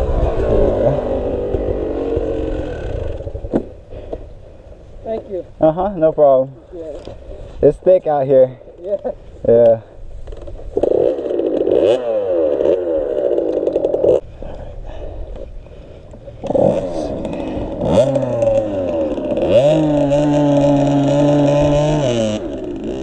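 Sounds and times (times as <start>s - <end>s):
dirt bike engine revving: 0.0s - 3.6s, 10.7s - 14.2s, 16.4s - 23.0s.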